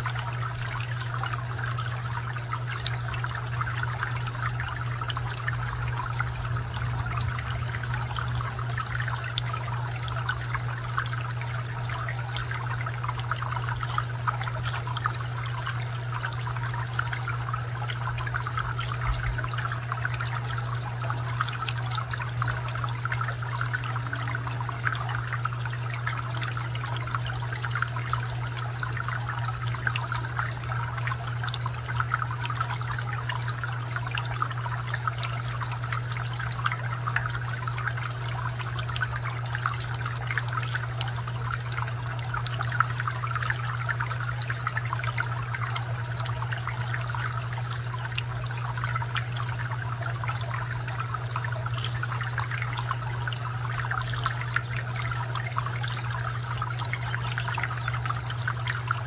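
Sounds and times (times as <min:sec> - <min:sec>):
fountain water trickling: 0:00.0 - 0:59.0
low hum: 0:03.2 - 0:11.2.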